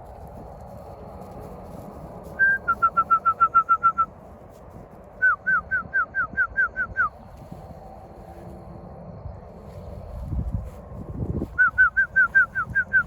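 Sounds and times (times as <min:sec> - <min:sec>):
whistled notes: 0:02.4 - 0:04.1, 0:05.2 - 0:07.2, 0:11.6 - 0:13.0.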